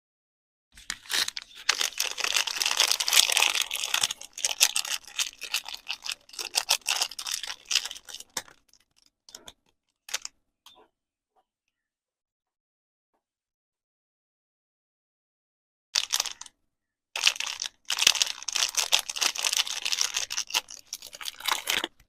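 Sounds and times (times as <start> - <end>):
packaging crinkling: 0.8 - 9.5, 16.0 - 16.5, 17.2 - 22.0.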